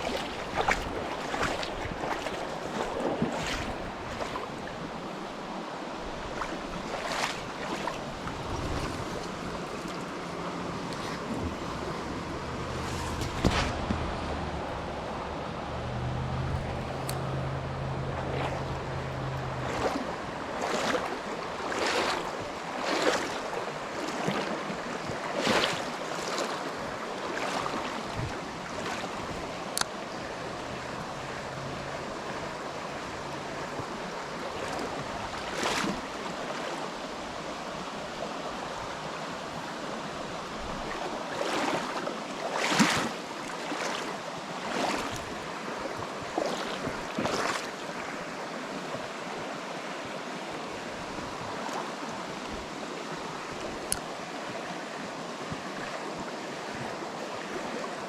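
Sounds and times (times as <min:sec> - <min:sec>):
stream water flowing: 0:00.0 - 0:58.0
short swishes: 0:12.7 - 0:14.4.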